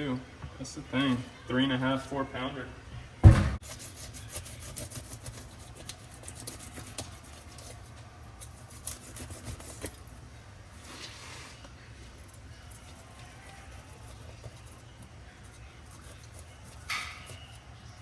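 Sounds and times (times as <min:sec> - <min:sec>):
loud thump: 0:03.2 - 0:03.6
knife scraping fish: 0:03.6 - 0:18.0.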